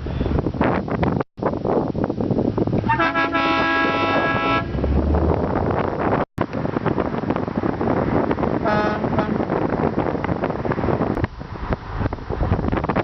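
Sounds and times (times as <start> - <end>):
air horn blast: 2.9 - 4.8, 8.6 - 9.4.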